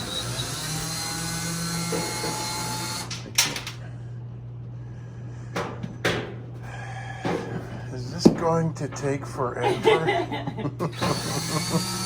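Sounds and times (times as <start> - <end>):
cordless drill running: 0.0 - 3.2, 10.9 - 12.0.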